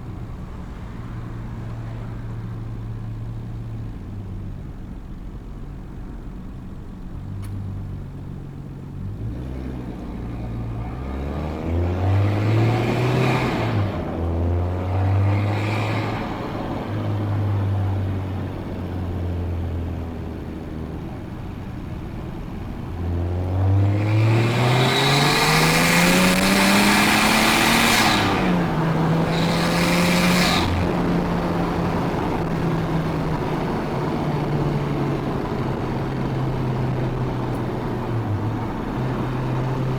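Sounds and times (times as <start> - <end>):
car engine accelerating: 0.0 - 39.9
turbo rushing: 23.9 - 38.9.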